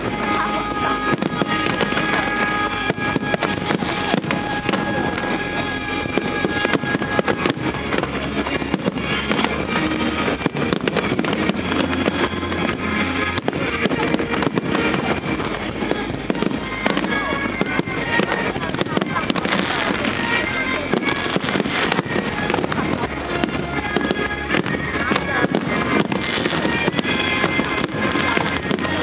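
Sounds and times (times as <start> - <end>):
fireworks bangs and crackles: 0.0 - 29.0
music playing: 0.0 - 29.0.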